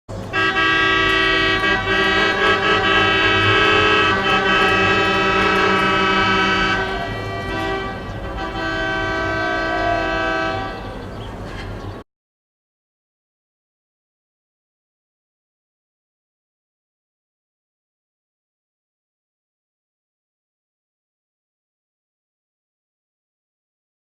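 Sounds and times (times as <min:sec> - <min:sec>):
car horns honking: 0:00.2 - 0:11.8.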